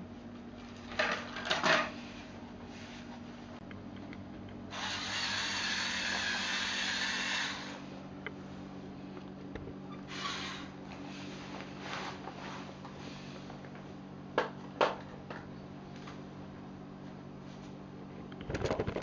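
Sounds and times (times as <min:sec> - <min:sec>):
small electric motor humming: 0:04.7 - 0:07.9, 0:10.1 - 0:10.8.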